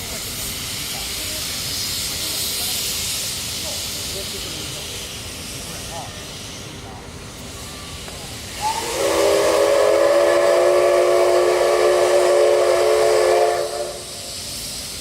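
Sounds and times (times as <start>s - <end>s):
steam hiss: 0.0s - 15.0s
steam locomotive whistle: 8.6s - 14.4s.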